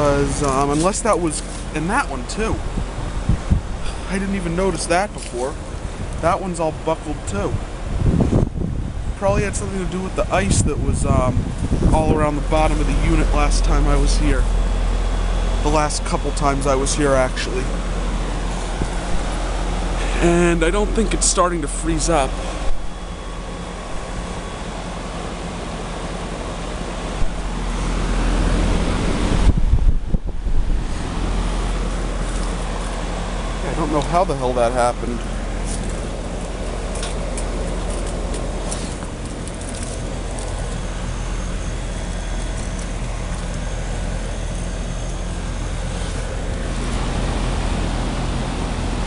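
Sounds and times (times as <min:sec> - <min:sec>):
compressor hum: 0:00.0 - 0:49.0
fan rushing air: 0:00.0 - 0:49.0.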